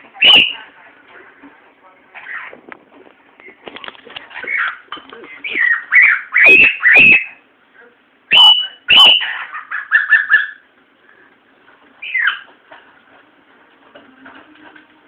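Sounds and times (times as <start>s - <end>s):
cockatiel chirps: 0.2s - 0.6s, 4.5s - 7.4s, 8.3s - 10.6s, 12.0s - 12.5s
loud shrill cockatiel calls: 5.5s - 7.4s, 8.3s - 10.6s, 12.0s - 12.4s.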